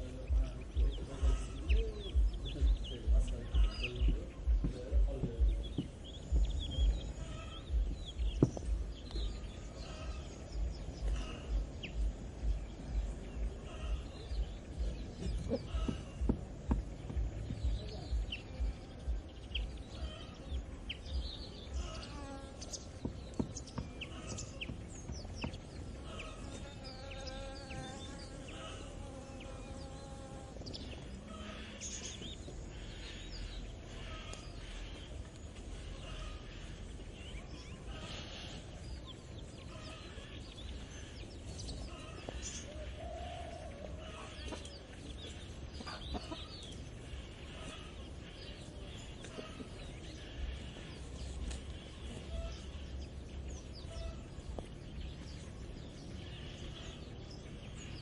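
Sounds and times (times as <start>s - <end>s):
farm animal calling: 0.0s - 16.3s, 17.6s - 22.9s, 23.6s - 38.6s, 39.6s - 54.6s
low pulsing thumps: 0.0s - 31.1s
small birds chirping: 0.0s - 58.0s
insect buzzing: 26.1s - 31.7s.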